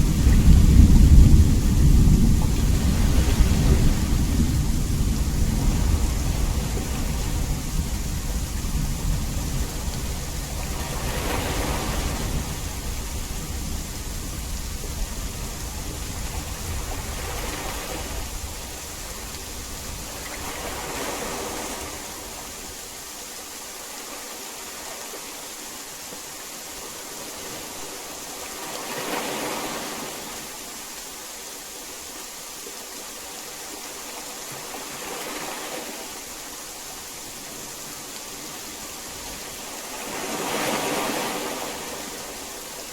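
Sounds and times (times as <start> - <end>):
distant thunder rumble: 0.0 - 22.3
heavy rain falling: 0.0 - 23.5.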